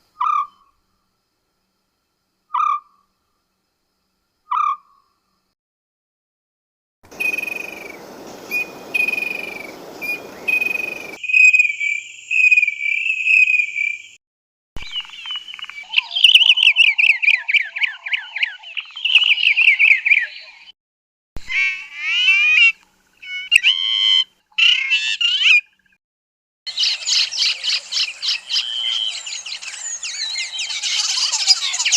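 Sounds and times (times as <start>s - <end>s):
background hiss: 7.1s - 11.2s
sharp falling bird notes: 7.1s - 11.9s
bird chattering: 7.2s - 14.0s
bird whistles: 7.2s - 14.0s, 26.7s - 31.9s.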